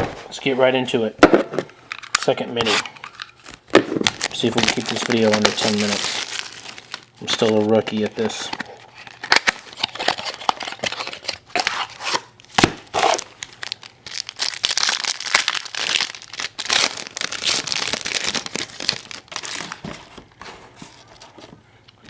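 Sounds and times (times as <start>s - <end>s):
wrappers crinkling and tearing: 3.4s - 19.9s.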